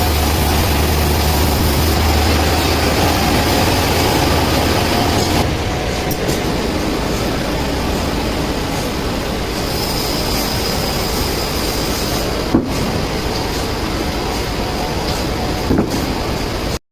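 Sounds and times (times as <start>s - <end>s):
sawmill machinery running: 0.0s - 16.8s.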